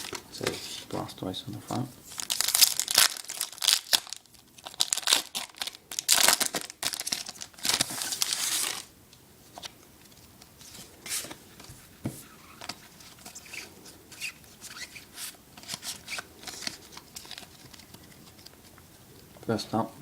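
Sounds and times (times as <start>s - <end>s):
foil wrapper tearing and crinkling: 2.1s - 8.9s, 15.6s - 18.1s.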